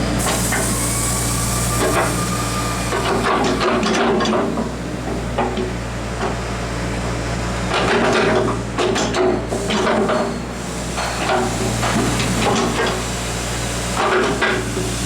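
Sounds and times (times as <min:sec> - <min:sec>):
diesel engine hum: 0:00.0 - 0:07.8.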